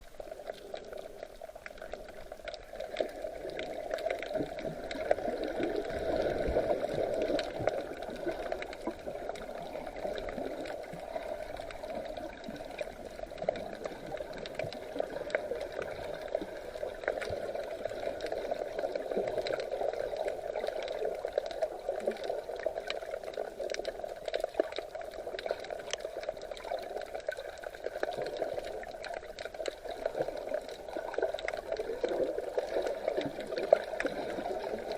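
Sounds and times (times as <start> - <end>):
seawater sloshing and bubbling: 0.0 - 34.9
small crackling clicks: 0.0 - 34.9.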